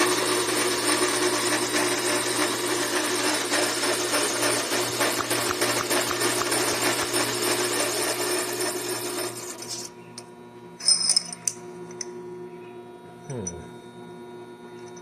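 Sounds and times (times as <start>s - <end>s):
lathe motor hum: 0.0s - 9.9s
lathe tool scraping steel: 0.0s - 9.9s.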